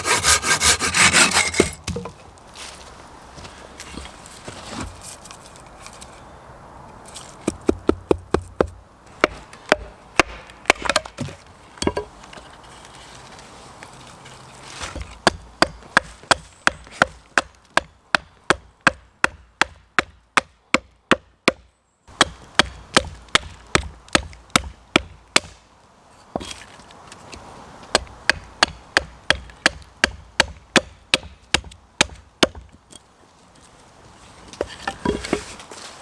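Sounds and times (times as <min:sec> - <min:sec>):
hand saw cutting log: 0:00.0 - 0:01.8.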